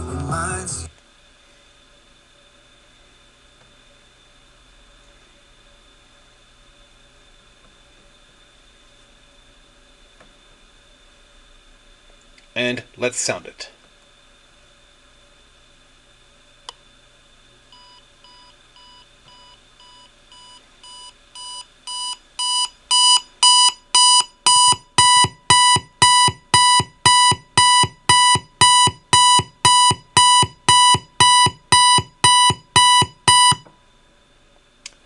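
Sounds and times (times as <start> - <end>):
alarm beeping: 18.8 - 33.7.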